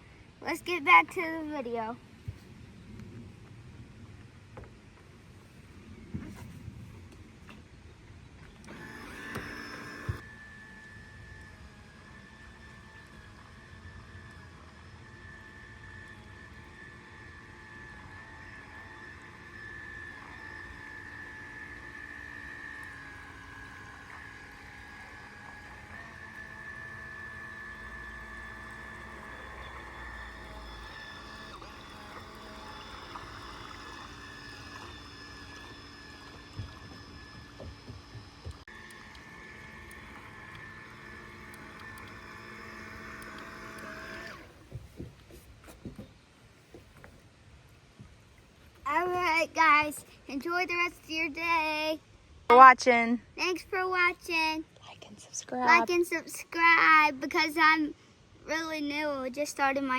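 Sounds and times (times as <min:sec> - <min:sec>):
electric motor whining: 0:08.4 - 0:45.2.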